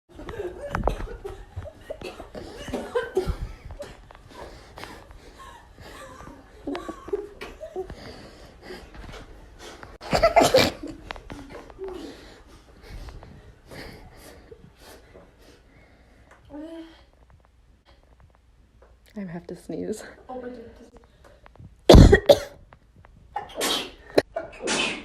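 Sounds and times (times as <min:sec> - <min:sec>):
laughter: 0:00.1 - 0:04.0, 0:05.3 - 0:08.0
loud sneeze: 0:10.1 - 0:10.8, 0:23.4 - 0:25.0.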